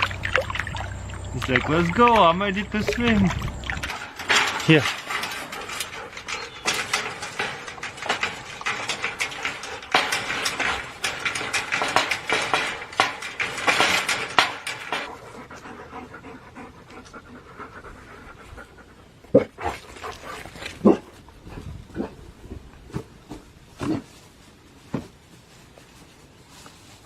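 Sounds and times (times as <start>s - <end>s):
dog panting: 5.1s - 8.3s, 15.1s - 20.5s.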